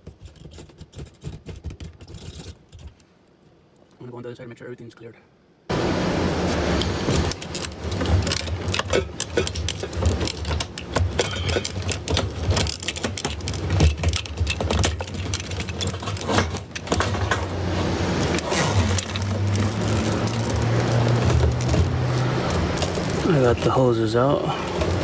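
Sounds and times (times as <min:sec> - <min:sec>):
plastic hoses clicking and rattling: 0:07.1 - 0:17.5, 0:18.2 - 0:25.0.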